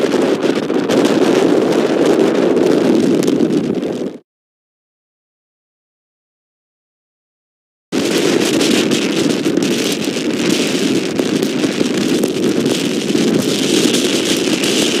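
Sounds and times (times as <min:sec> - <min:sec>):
wind blasting microphone: 0:00.0 - 0:04.2, 0:07.9 - 0:15.0.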